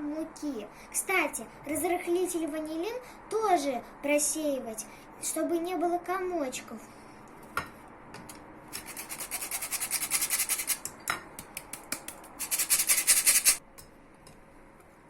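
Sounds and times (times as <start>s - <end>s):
flour sifting through sieve: 12.4s - 13.6s.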